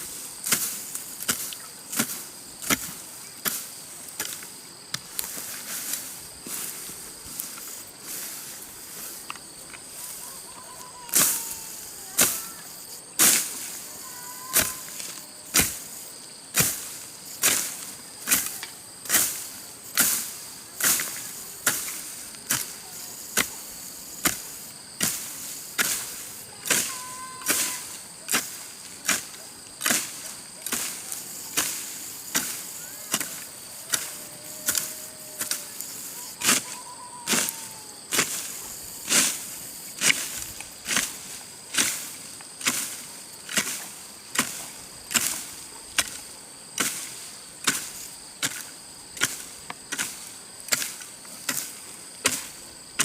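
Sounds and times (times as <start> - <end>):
hand tool chopping into soil: 0.4 - 3.6, 14.5 - 15.8, 24.2 - 35.8, 36.4 - 38.5, 40.0 - 46.2, 46.8 - 53.0.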